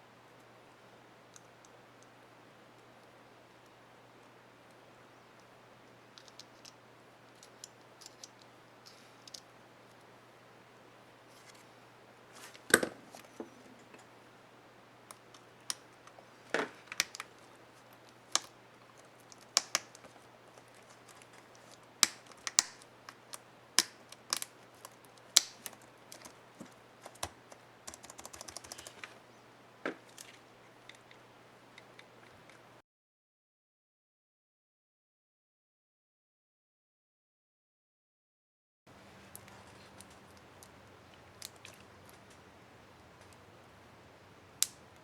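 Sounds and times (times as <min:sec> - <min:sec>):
laptop keyboard keys clicking: 0:18.0 - 0:29.2.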